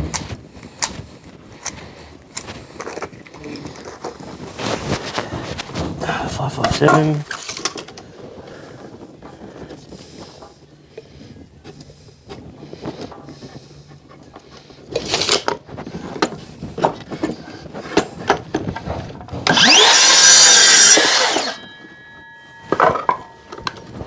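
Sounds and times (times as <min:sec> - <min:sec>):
power saw cutting timber: 0:19.4 - 0:24.0
saw blade ringing: 0:19.5 - 0:24.0.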